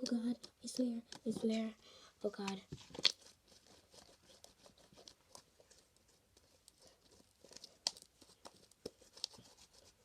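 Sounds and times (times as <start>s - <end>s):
slime clicks and crackles: 7.4s - 9.4s.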